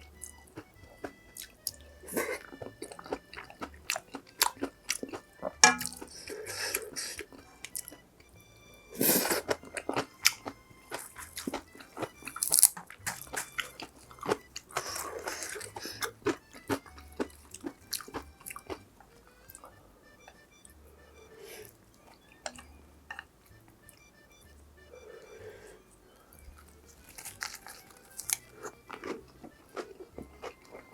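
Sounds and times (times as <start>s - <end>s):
chewing and biting food: 0.0s - 8.3s, 8.9s - 30.9s
food crunching: 0.0s - 8.3s, 8.9s - 24.2s, 25.0s - 30.9s
wet mouth clicks: 22.4s - 23.3s.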